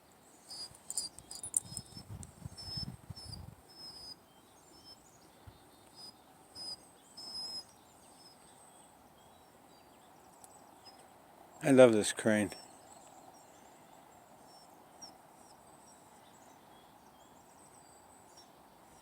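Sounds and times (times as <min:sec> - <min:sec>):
small birds chirping: 0:00.0 - 0:19.0.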